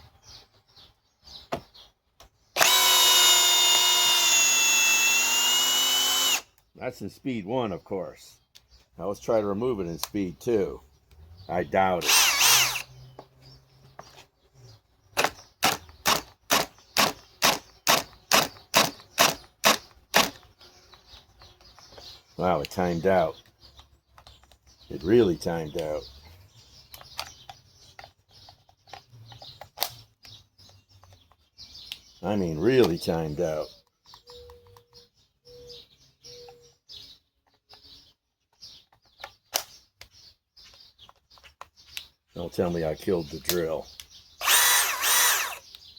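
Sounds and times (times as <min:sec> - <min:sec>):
birds chirping: 0:00.0 - 0:45.9
drill motor pulsing in bursts: 0:02.6 - 0:06.4, 0:12.0 - 0:12.9, 0:44.4 - 0:45.7.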